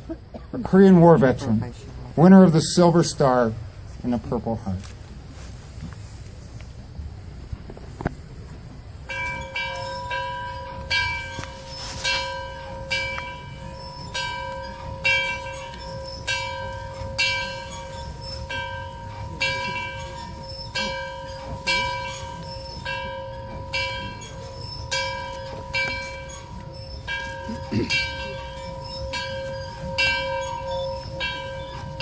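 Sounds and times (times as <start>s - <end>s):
large bell ringing: 9.1s - 32.0s.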